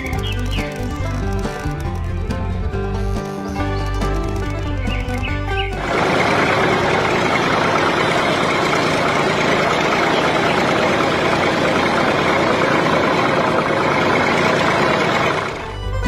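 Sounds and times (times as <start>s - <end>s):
music: 0.0s - 8.2s, 15.4s - 16.0s
motor running steadily: 0.0s - 16.0s.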